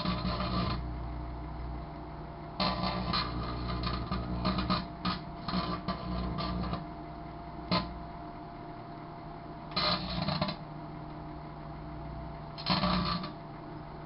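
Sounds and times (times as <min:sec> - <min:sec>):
electric arcing crackles: 0:00.0 - 0:00.9, 0:02.6 - 0:06.9, 0:07.7 - 0:08.0, 0:09.7 - 0:10.8, 0:12.5 - 0:13.4
microwave oven humming: 0:00.0 - 0:14.0.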